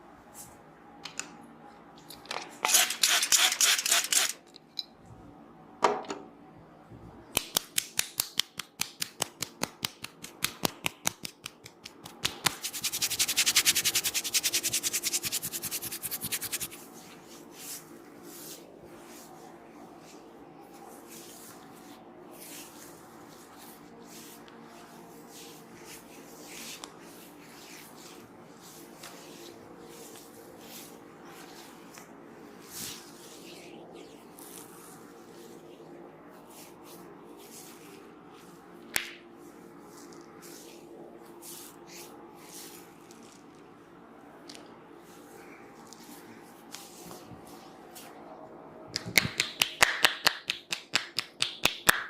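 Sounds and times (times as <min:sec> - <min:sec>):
hands tapping on a head: 0:07.4 - 0:12.6, 0:49.0 - 0:52.0
rubbing and scratching hair: 0:08.6 - 0:43.9, 0:44.5 - 0:48.3.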